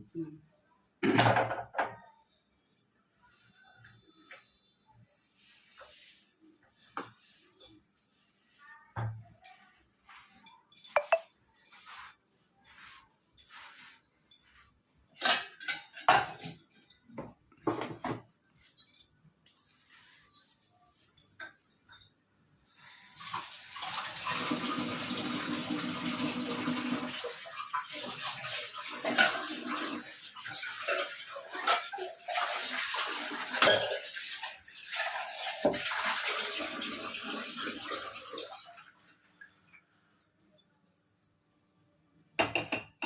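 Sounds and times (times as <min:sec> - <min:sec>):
vessel knocking and clinking: 0:10.9 - 0:11.3
tap water running into sink: 0:23.1 - 0:39.0.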